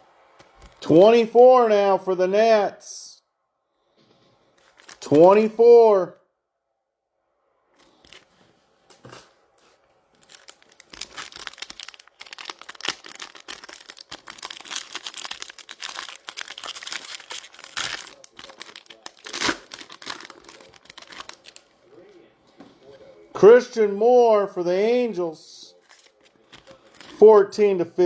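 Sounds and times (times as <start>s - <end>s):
card pack wrappers tearing and crinkling: 4.6s - 5.4s, 7.8s - 8.4s, 10.1s - 21.8s, 25.7s - 27.2s.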